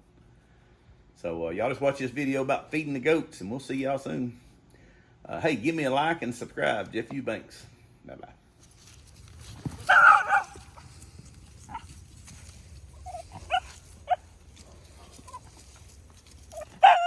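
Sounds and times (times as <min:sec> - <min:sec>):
dog barking: 0:09.9 - 0:10.8, 0:13.1 - 0:14.3, 0:16.5 - 0:17.0
dog yipping and whining: 0:09.9 - 0:10.8, 0:13.0 - 0:14.2, 0:15.1 - 0:15.6, 0:16.5 - 0:17.0.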